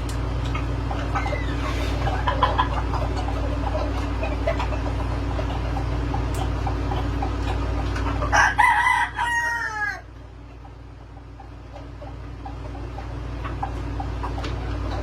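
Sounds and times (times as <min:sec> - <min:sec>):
rooster crowing: 0:08.2 - 0:10.2.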